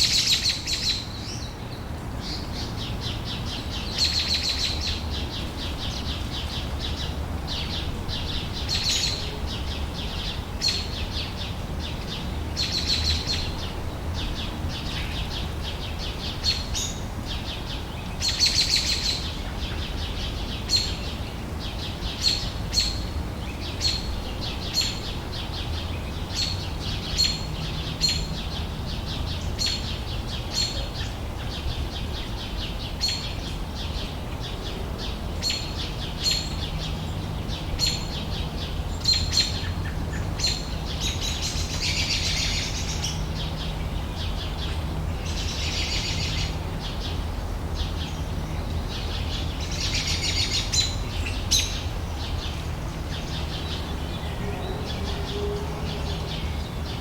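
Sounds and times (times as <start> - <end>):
bird chirping: 47.8 - 57.0.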